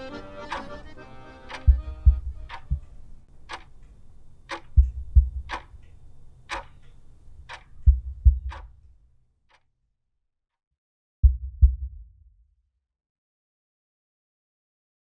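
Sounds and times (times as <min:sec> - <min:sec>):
clock ticking: 0:00.0 - 0:08.9
low heartbeat thumps: 0:01.6 - 0:03.0, 0:04.7 - 0:05.8, 0:07.8 - 0:08.8, 0:11.2 - 0:12.2.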